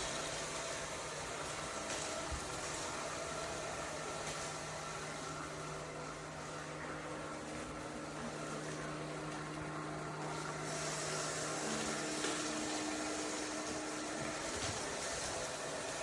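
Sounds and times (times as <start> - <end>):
small motor and fan humming: 0.0 - 16.0
hiss: 10.4 - 16.0.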